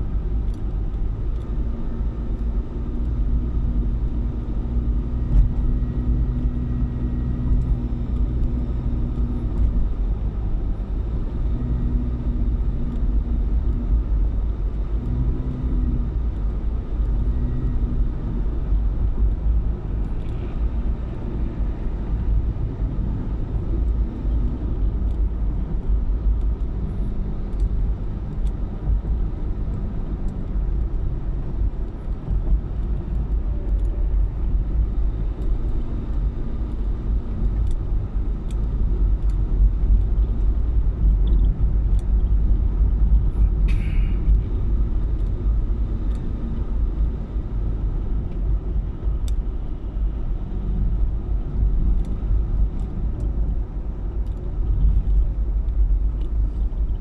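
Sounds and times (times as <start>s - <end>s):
car engine rumble: 0.0s - 57.0s
road noise: 0.0s - 57.0s.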